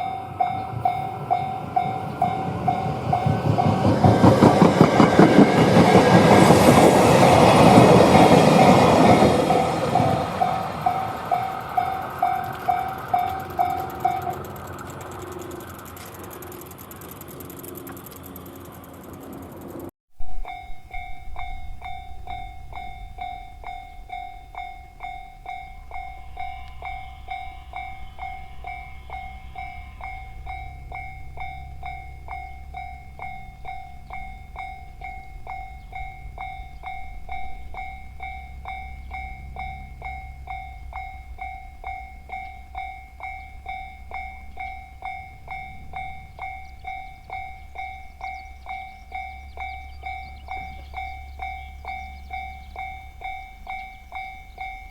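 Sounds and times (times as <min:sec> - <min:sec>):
level-crossing warning bell: 0:00.0 - 0:54.9
train rumbling past: 0:00.0 - 0:54.9.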